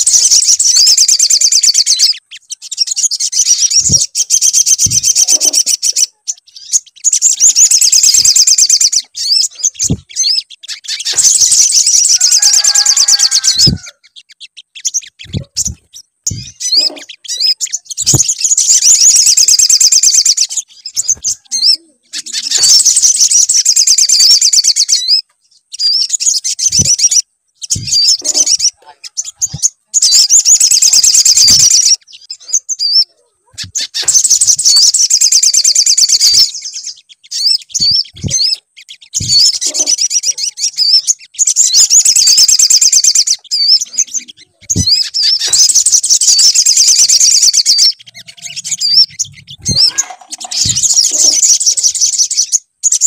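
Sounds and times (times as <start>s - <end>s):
songbird twittering: 0.0s - 53.0s
low thumps: 27.7s - 28.1s.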